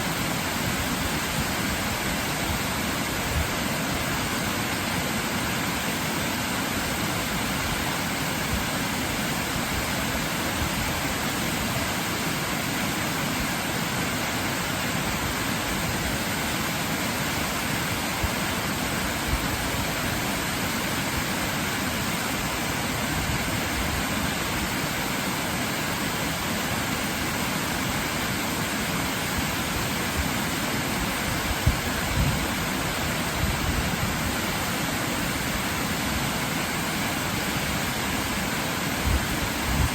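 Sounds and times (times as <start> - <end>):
waterfall roaring: 0.0 - 39.9.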